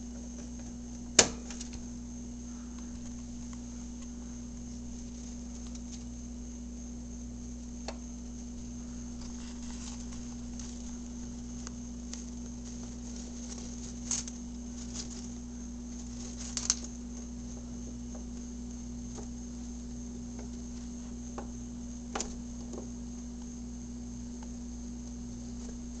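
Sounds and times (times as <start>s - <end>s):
steady low hum: 0.0s - 26.0s
hamster nibbling and crunching food: 7.8s - 21.4s.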